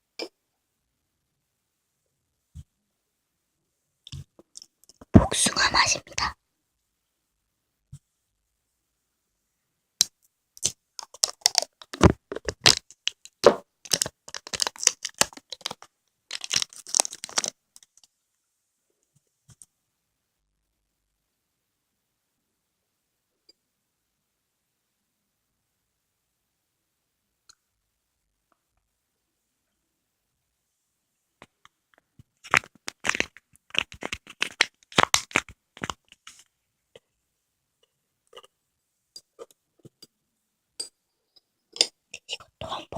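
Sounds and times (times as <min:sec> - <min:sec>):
jelly clicks and crackles: 0:04.1 - 0:06.3, 0:10.0 - 0:18.2, 0:31.4 - 0:37.1, 0:37.8 - 0:38.6, 0:41.7 - 0:42.9.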